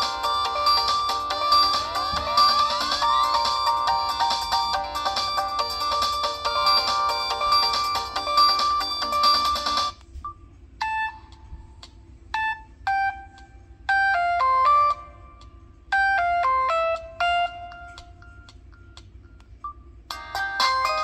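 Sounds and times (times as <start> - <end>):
electronic phone ringtone: 0.0 - 11.4, 12.3 - 21.0
busier ringtone: 0.0 - 21.0.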